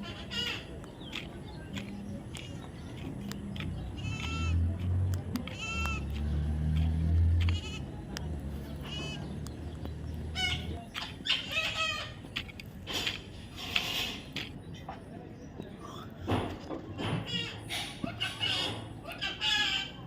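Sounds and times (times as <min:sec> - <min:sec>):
baby parrot shrill cries: 0:11.2 - 0:12.1, 0:17.3 - 0:20.0.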